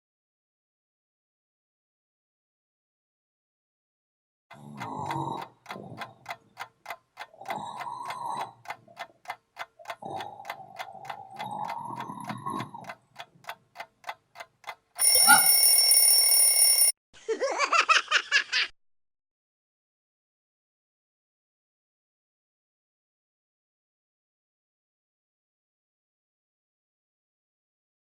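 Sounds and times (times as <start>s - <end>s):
clock ticking: 4.5s - 16.9s
alarm clock ringing: 15.0s - 17.0s.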